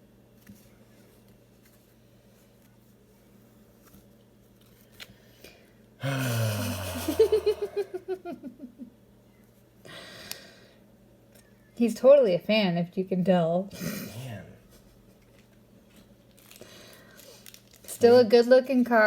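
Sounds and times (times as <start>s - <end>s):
man groaning: 6.0s - 7.9s
man laughing: 6.2s - 8.9s.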